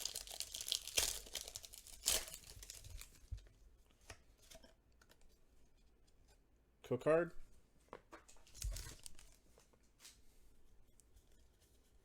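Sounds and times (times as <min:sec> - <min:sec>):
foil wrapper tearing and crinkling: 0:00.0 - 0:03.2, 0:08.4 - 0:09.4.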